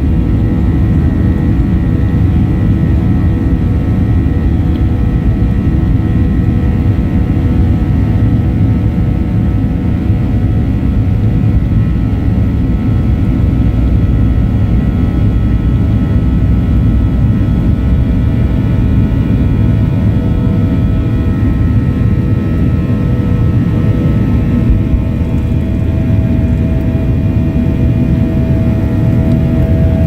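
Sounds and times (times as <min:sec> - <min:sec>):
airliner engines rumbling: 0:00.0 - 0:30.0
engine whining tones: 0:20.8 - 0:30.0.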